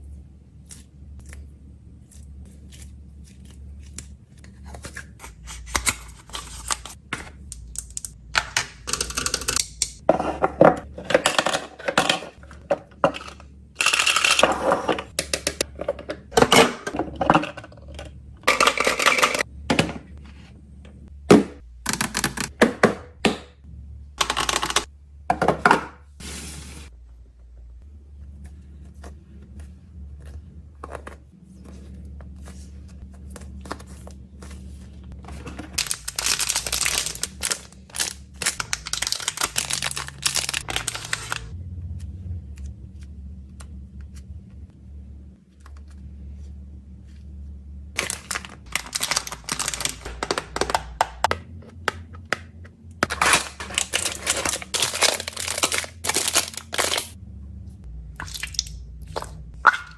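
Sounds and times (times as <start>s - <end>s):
steady low hum: 0.0s - 59.9s
plastic packaging crinkling: 35.8s - 41.5s, 48.0s - 51.0s, 53.1s - 57.2s.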